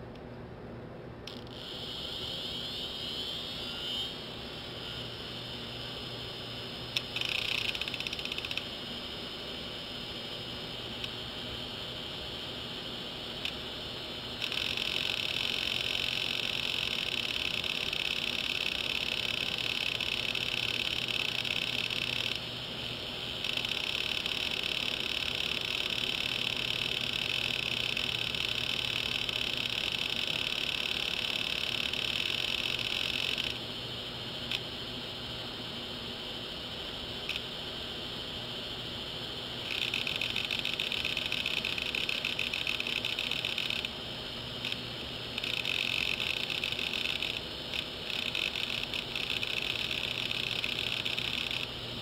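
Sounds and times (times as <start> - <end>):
hard drive high-pitched buzz: 1.1 - 52.0.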